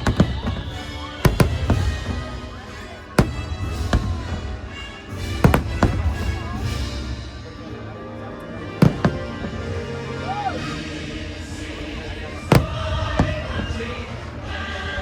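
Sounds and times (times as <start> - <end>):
fireworks bangs: 0.0 - 2.5, 3.2 - 6.8, 8.8 - 9.6, 12.5 - 13.8.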